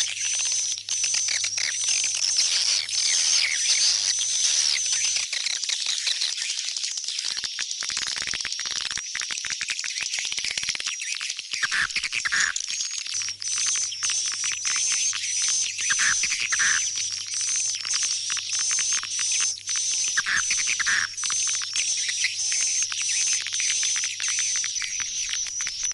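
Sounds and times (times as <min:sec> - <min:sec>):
swiftlets twittering: 0:13.2 - 0:25.9.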